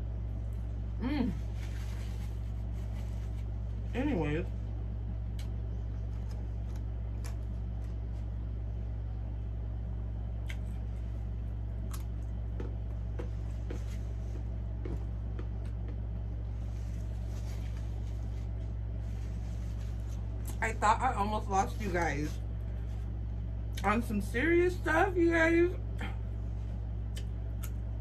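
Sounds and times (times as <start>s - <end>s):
steady low hum: 0.0s - 28.0s
person chewing: 10.4s - 11.0s, 11.8s - 16.0s.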